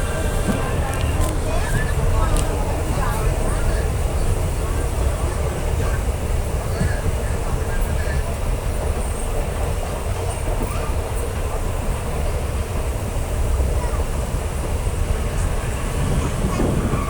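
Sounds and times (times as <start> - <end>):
train wheels rumbling on track: 0.0 - 17.0
wind: 0.0 - 17.0.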